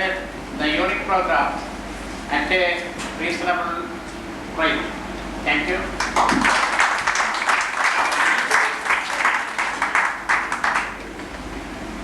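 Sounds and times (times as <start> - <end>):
audience clapping: 6.0 - 11.4.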